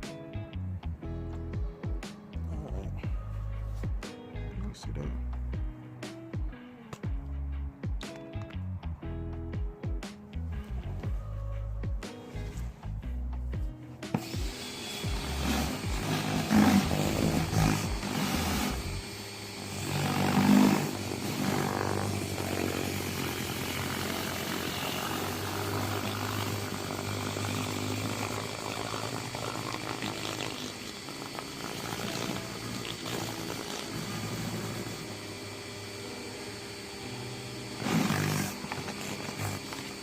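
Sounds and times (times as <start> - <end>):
pressure washer spraying concrete: 14.2 - 35.8, 37.8 - 40.0.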